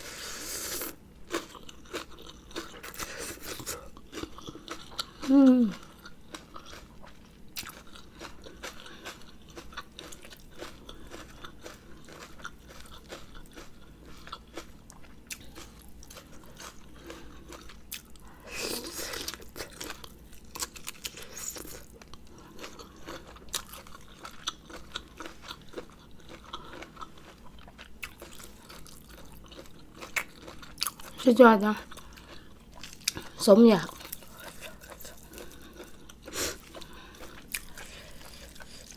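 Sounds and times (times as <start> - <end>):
chewing and crunching food: 0.0 - 38.9.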